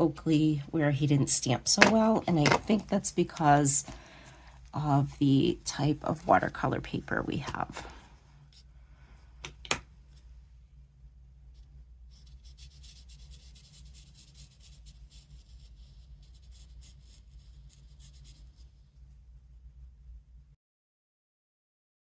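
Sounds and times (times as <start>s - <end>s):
steady low hum: 0.0s - 20.6s
marker scratching on cardstock: 12.1s - 18.7s.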